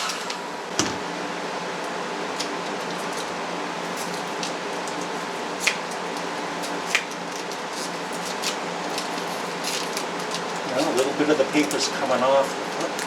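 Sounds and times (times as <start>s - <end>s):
hair dryer running: 0.0s - 1.4s
tape and paper crackling: 4.0s - 13.0s.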